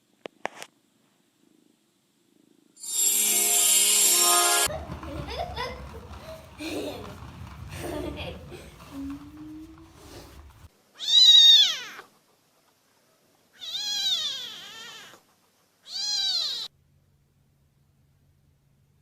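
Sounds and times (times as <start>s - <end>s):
kitten meowing: 11.0s - 12.1s, 13.6s - 15.2s, 15.8s - 16.7s.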